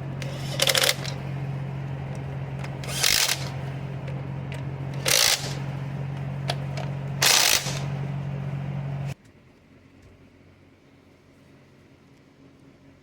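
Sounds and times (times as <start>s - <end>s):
car engine running: 0.0s - 9.2s.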